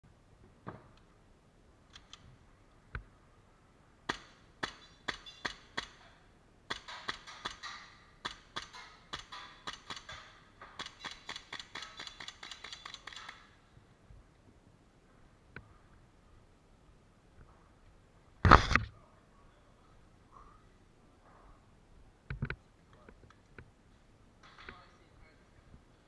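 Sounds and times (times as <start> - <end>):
airsoft guns firing: 4.1 - 13.6.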